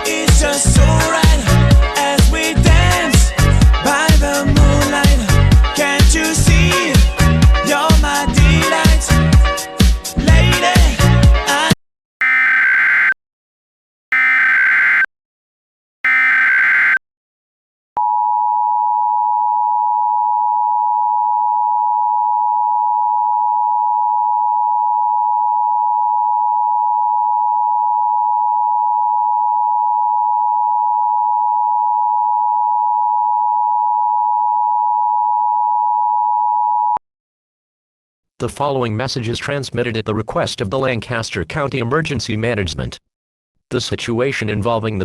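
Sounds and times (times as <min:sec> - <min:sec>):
two-tone attention signal: 0:12.2 - 0:13.2, 0:14.1 - 0:15.1, 0:16.1 - 0:17.0
warbling data tones: 0:12.2 - 0:13.2, 0:14.1 - 0:15.1, 0:16.1 - 0:17.0.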